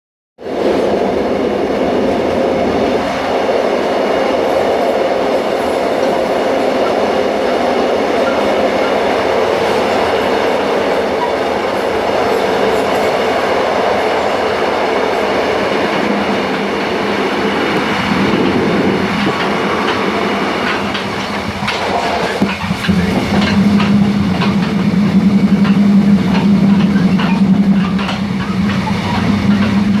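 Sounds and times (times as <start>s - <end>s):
train wheels on rails: 0.4s - 30.0s
railway car coupling clattering: 4.3s - 30.0s
low hum: 22.4s - 30.0s.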